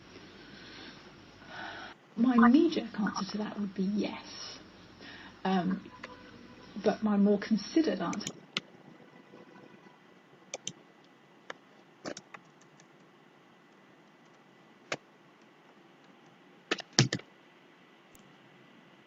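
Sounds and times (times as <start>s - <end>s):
faint steady hiss: 0.0s - 19.0s
computer keyboard clicks: 10.5s - 10.8s, 11.5s - 13.0s, 16.7s - 17.2s.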